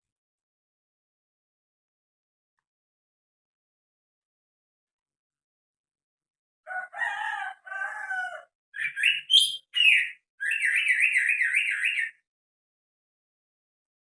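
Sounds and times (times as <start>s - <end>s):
bird calling with warbling trill: 8.8s - 12.3s.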